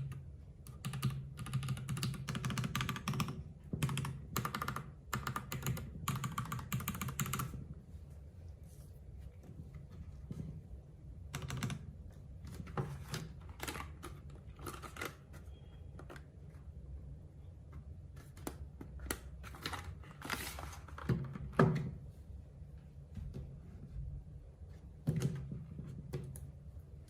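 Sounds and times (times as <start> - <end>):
mechanical keyboard typing: 0.0 - 7.7, 11.3 - 11.9, 12.6 - 15.3.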